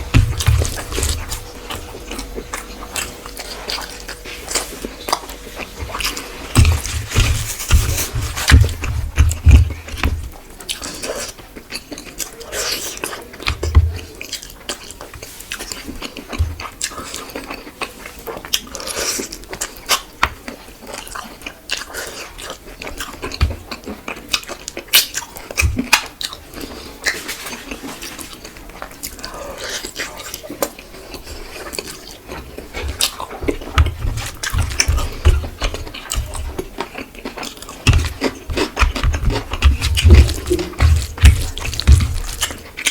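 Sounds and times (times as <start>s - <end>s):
low thumps: 0.0s - 9.8s, 37.9s - 42.7s
person chewing food: 0.0s - 42.9s.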